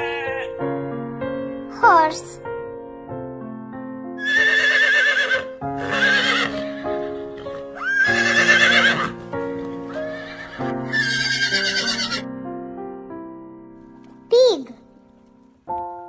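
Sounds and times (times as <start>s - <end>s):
background piano music: 0.0s - 16.0s
horse neighing: 4.2s - 9.2s, 9.9s - 12.2s.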